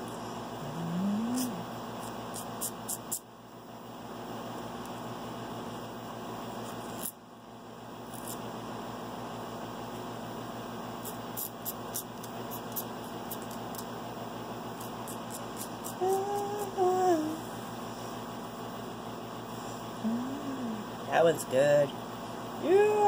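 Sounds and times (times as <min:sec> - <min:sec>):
nail file rasping on toenail: 0:01.4 - 0:03.2, 0:08.1 - 0:08.4, 0:11.0 - 0:13.9, 0:14.7 - 0:16.7.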